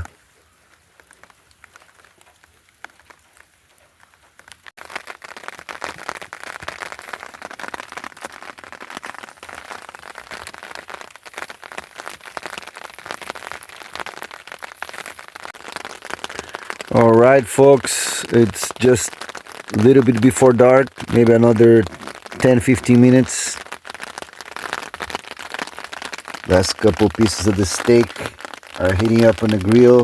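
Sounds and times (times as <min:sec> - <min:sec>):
scattered drips: 0:00.0 - 0:30.0
drizzle pattering: 0:15.7 - 0:30.0.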